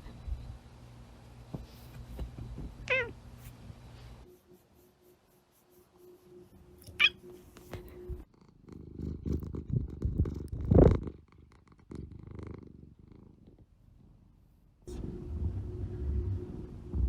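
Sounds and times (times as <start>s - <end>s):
cat purring: 7.9s - 17.0s.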